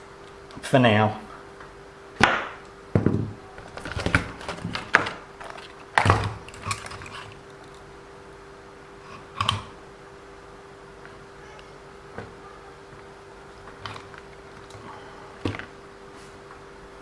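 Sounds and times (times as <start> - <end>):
faint steady hum: 0.0 - 17.0
clicks and knocks of small parts: 3.7 - 7.8.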